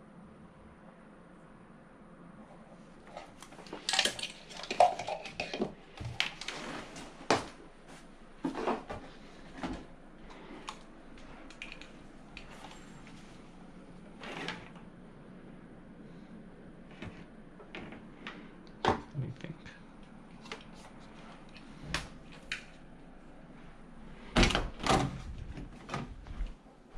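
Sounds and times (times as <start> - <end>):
objects clicking and knocking: 3.1 - 6.6.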